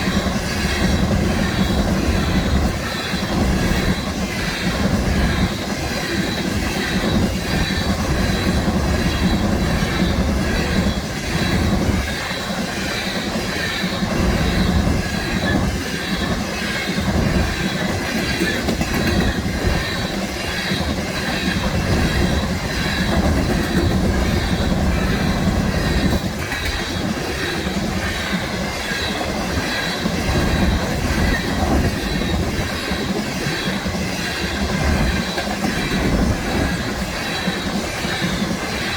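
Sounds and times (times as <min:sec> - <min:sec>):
train wheels clattering over rails: 0:00.0 - 0:38.9.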